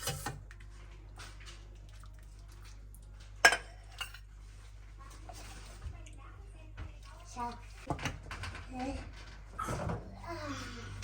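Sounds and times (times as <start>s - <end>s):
kitchenware clinking: 0.0s - 0.4s, 3.4s - 4.3s.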